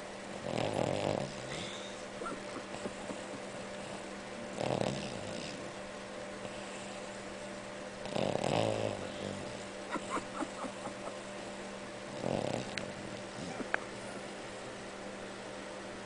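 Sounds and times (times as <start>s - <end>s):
steady hum: 0.0s - 16.0s
dog snoring: 0.3s - 5.8s, 6.4s - 7.2s, 8.0s - 10.9s, 12.1s - 14.3s.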